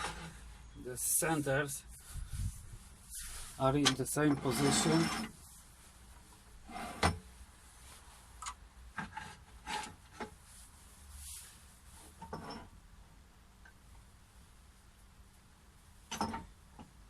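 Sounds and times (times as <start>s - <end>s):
metal scraping rubs: 0.0s - 0.5s, 2.0s - 5.4s.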